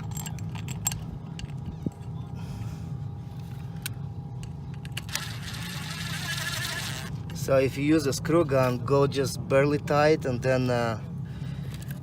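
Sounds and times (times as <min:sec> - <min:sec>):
metal parts and tools clicking: 0:00.0 - 0:02.1
steady low hum: 0:00.0 - 0:12.0.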